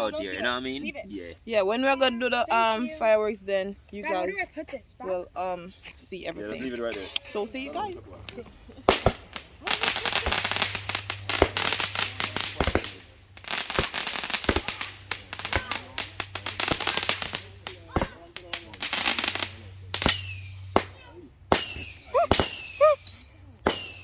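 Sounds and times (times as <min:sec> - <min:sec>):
voices: 0:00.0 - 0:24.0
fireworks crackling: 0:06.9 - 0:24.0.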